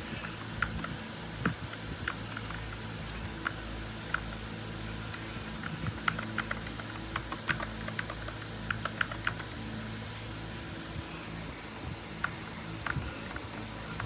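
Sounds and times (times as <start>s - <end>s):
faint low hum: 0.0s - 14.0s
keyboard keys clicking: 0.2s - 4.4s, 5.1s - 9.5s, 12.2s - 14.0s.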